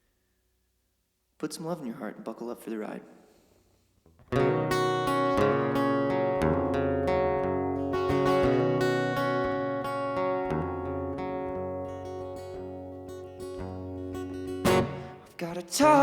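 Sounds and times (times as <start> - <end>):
acoustic guitar strumming chords: 4.3 - 16.0.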